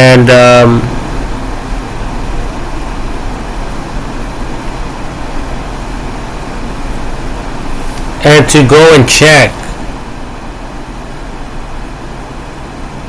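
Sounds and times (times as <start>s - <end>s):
even hiss: 7.6s - 10.0s.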